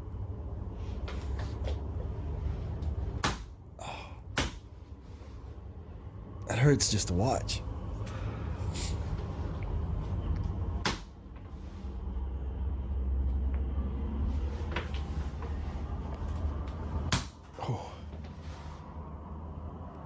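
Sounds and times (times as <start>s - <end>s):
steady low hum: 0.0s - 20.0s
hard smacks on a back: 4.4s - 4.7s.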